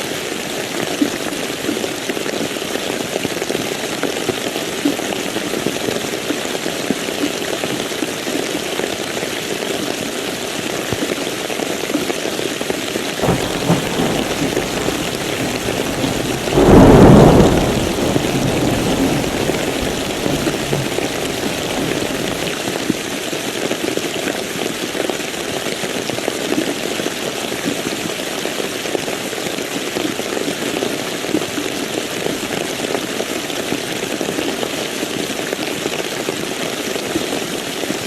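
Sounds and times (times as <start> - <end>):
loud thunderclap: 13.2 - 22.6
low thunder rumble: 13.2 - 22.6
steady rain falling: 13.2 - 22.7.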